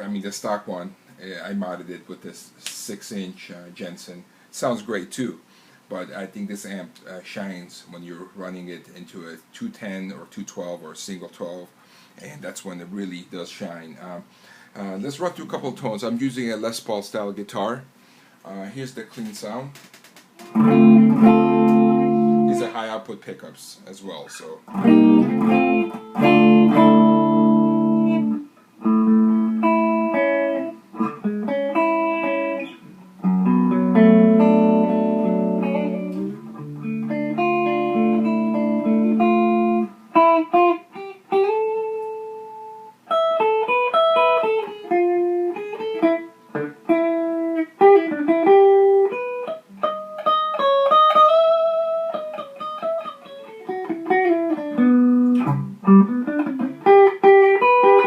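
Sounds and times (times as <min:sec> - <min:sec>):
clean electric guitar playing: 0:20.4 - 0:22.8, 0:24.7 - 0:58.0.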